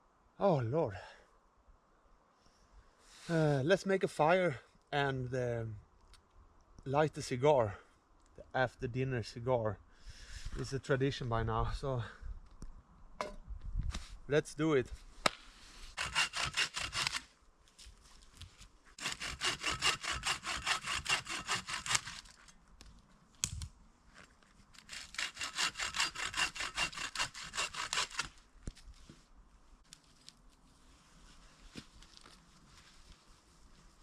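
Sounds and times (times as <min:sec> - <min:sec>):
hand saw cutting wood: 0:15.9 - 0:17.3, 0:19.0 - 0:22.4, 0:24.8 - 0:28.4.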